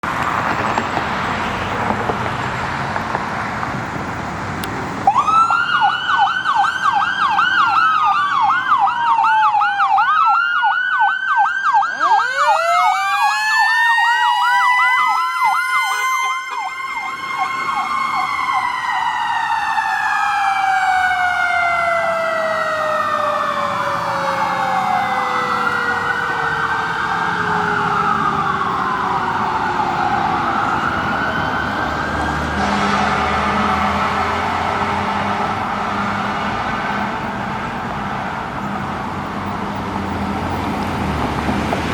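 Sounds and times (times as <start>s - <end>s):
electronic siren yelping: 5.1s - 32.5s
electronic siren wailing: 5.1s - 35.0s.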